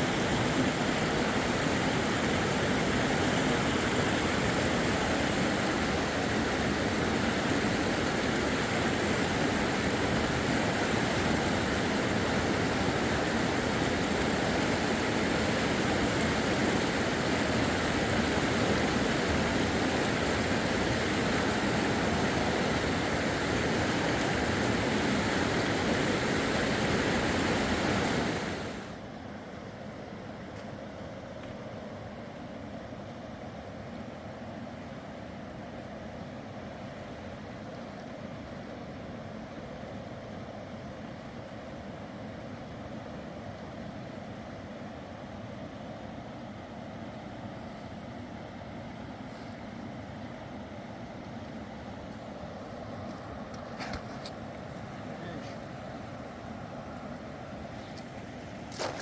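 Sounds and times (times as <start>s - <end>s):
fast-flowing river water: 0.0s - 28.9s.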